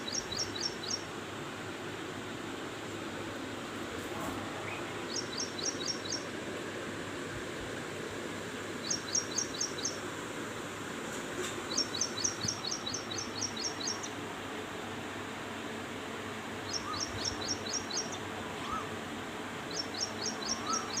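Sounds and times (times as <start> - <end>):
bird chirping rapidly: 0.0 - 1.0, 4.7 - 6.3, 11.7 - 14.1, 19.7 - 21.0
outdoor background noise: 0.0 - 21.0
faint rising bird calls: 16.6 - 21.0.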